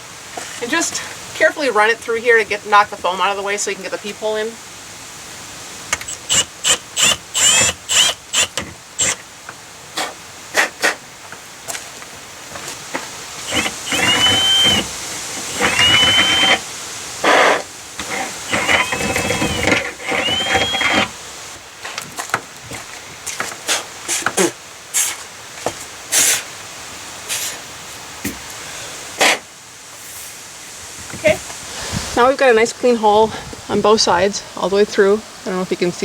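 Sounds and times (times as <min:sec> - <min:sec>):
power drill whining: 0:06.0 - 0:09.3, 0:13.4 - 0:21.6.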